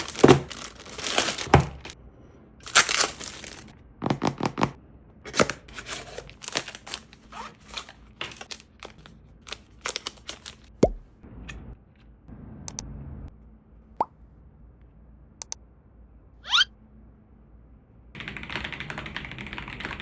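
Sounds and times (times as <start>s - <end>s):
plastic and paper crinkling: 0.0s - 2.0s, 2.6s - 4.7s, 5.3s - 10.8s.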